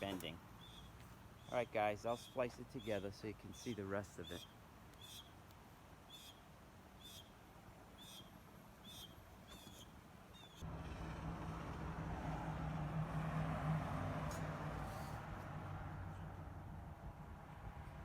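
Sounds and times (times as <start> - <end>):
bird chirping: 0.0 - 5.4, 6.1 - 6.4, 7.0 - 7.3, 8.0 - 10.6
engine drone: 10.6 - 18.0.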